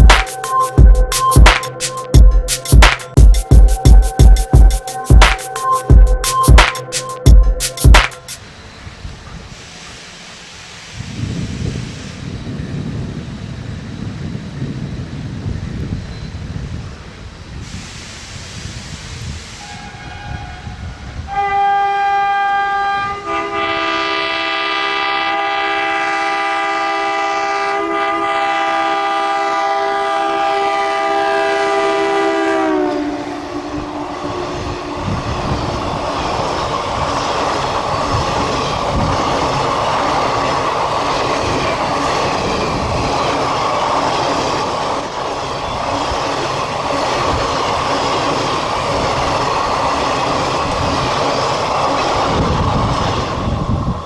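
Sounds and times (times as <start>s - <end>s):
locomotive two-note horn: 19.6s - 35.2s.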